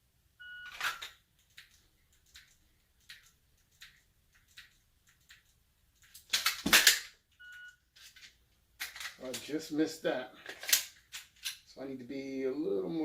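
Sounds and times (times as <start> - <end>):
pistol drawn from holster clatter: 6.2 - 7.1, 8.0 - 9.2, 10.5 - 11.6.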